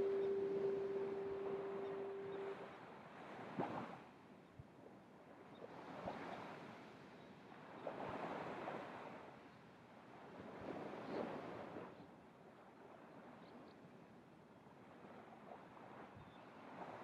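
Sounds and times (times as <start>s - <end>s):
waves breaking on beach: 0.0s - 2.6s.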